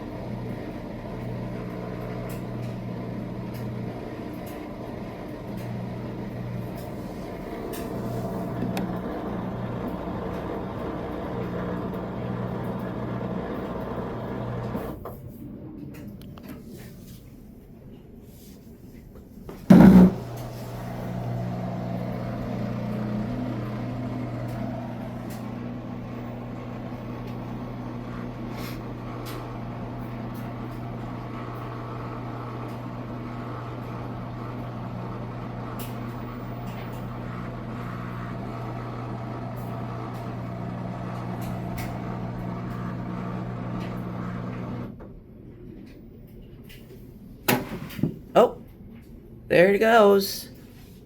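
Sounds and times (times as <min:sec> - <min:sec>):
washing machine motor humming: 0:00.0 - 0:15.2, 0:19.4 - 0:45.0
washing machine clunk: 0:19.6 - 0:21.5, 0:47.5 - 0:48.3.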